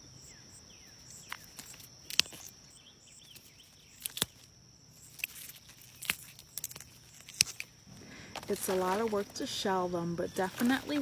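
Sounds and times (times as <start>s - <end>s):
high insect trill: 0.0s - 11.0s
pea pods snapping: 1.0s - 2.6s, 3.2s - 9.4s.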